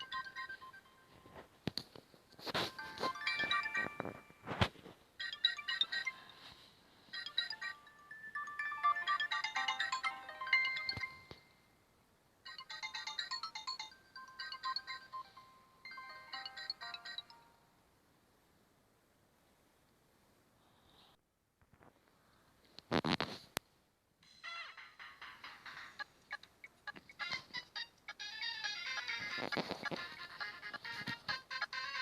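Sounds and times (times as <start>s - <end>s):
polyphonic ringtone melody: 0.0s - 1.4s, 2.4s - 4.6s, 5.2s - 11.6s, 12.4s - 17.7s, 25.2s - 32.0s.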